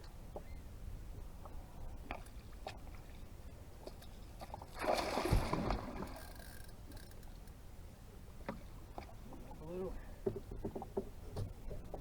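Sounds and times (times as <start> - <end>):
water sloshing against boat hull: 1.2 - 7.4.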